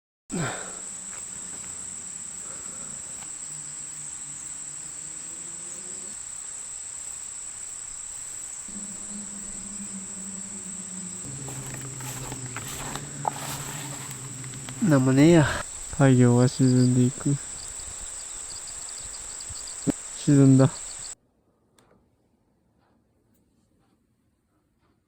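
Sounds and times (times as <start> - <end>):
insects trilling: 0.3 - 21.2
faint low sustained tones: 8.3 - 21.1.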